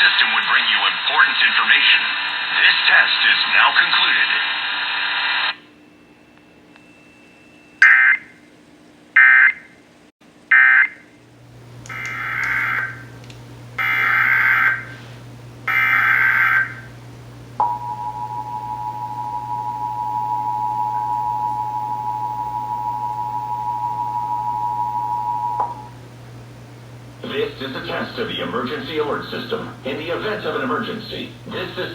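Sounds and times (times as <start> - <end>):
two-tone attention signal: 17.6 - 26.0.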